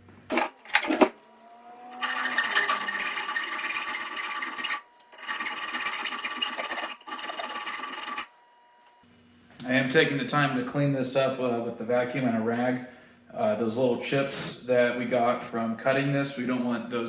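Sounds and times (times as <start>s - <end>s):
small vacuum cleaner running: 0.3s - 9.1s.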